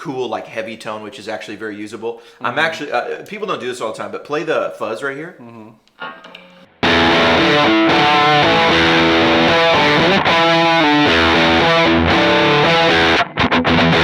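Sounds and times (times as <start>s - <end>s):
distorted fuzz electric guitar: 6.0s - 14.0s.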